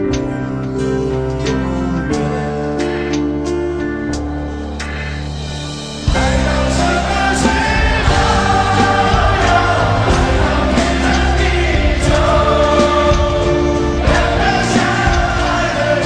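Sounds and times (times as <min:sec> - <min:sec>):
pop ballad with choir vocals: 0:06.1 - 0:16.0.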